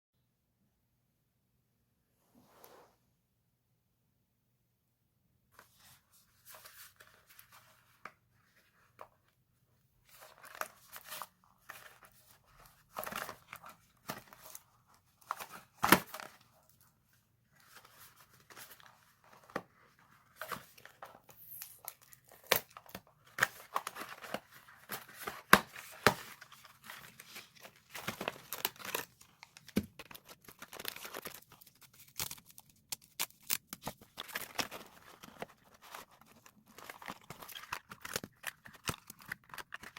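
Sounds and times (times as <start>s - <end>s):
packaging torn and crinkled: 20.5s - 39.9s.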